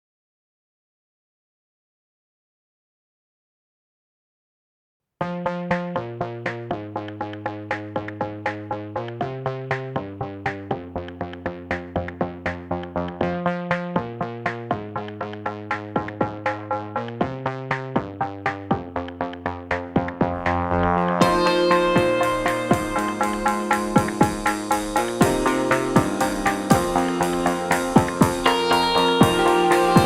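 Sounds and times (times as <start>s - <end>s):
electronic music: 5.4s - 30.0s.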